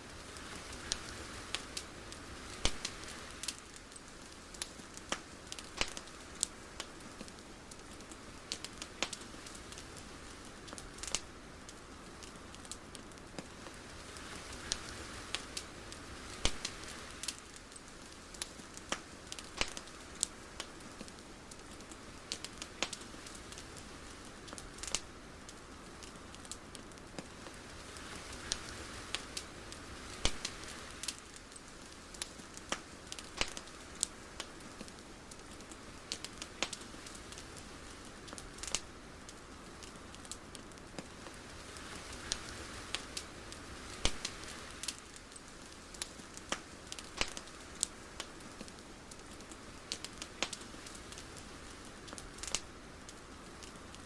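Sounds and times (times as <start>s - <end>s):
crackles and pops: 0.0s - 54.0s
soft steady hiss: 0.0s - 54.0s.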